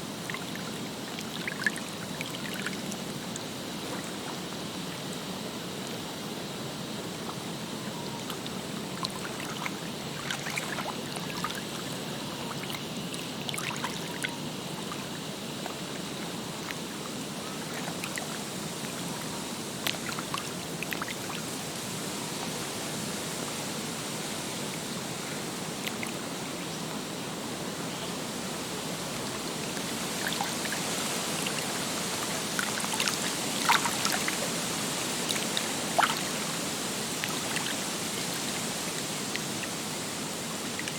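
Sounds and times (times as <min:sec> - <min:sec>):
water lapping at shore: 0:08.2 - 0:40.9.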